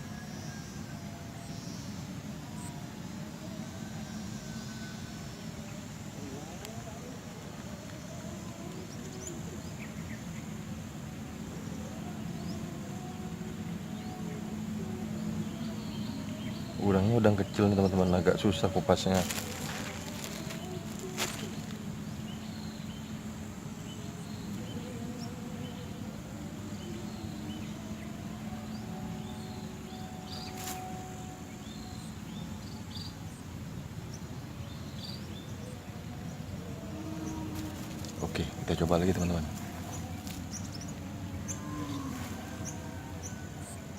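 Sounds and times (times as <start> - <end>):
high insect whine: 0.0 - 43.9
low engine hum: 35.8 - 43.9.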